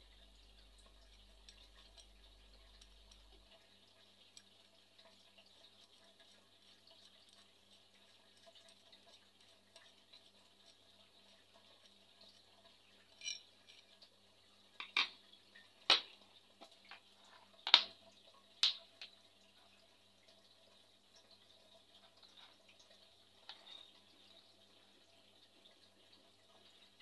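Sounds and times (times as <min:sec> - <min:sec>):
metal tools clinking: 0:13.1 - 0:13.9.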